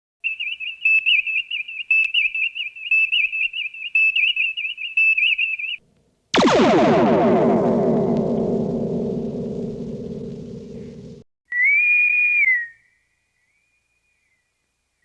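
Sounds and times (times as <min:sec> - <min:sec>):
warbling electronic whistle: 0:06.4 - 0:11.8.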